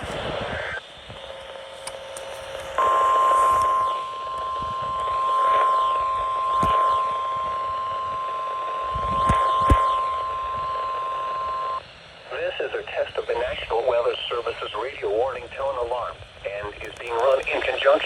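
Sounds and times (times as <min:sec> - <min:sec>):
radio static crackling: 0:00.0 - 0:18.0
steady alarm tone: 0:00.6 - 0:12.0.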